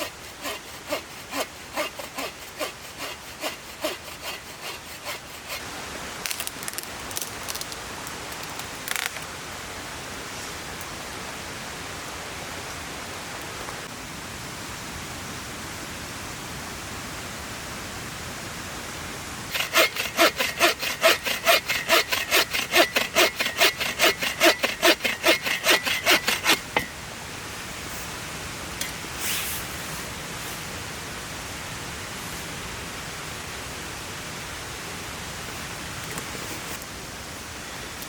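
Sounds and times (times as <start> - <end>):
hand saw cutting wood: 0.0 - 5.7, 19.5 - 26.9.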